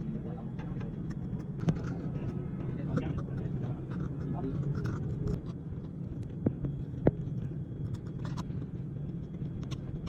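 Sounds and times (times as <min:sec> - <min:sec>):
steady low hum: 0:00.0 - 0:10.0.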